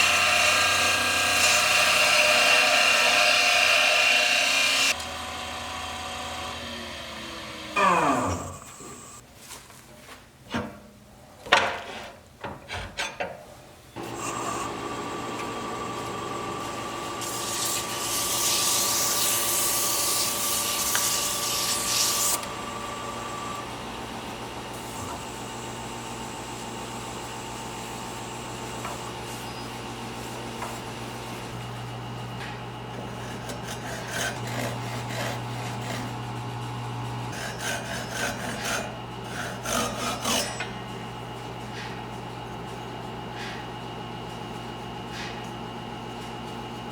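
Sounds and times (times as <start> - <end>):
wood lathe motor humming: 0.0 - 9.2, 14.0 - 41.2
tool rubbing spinning wood hissing: 17.0 - 22.4.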